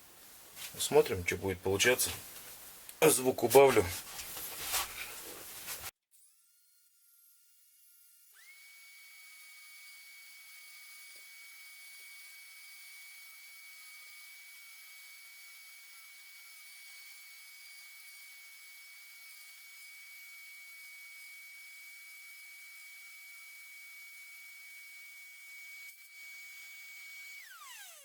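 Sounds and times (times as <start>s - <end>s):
rotary engraving tool whine: 6.1s - 28.0s.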